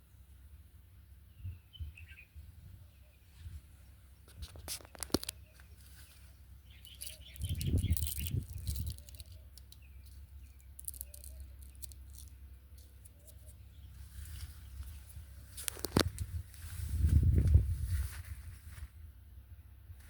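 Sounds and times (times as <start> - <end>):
birds chirping: 1.1 - 16.0
light ticks and rustles: 4.2 - 19.0.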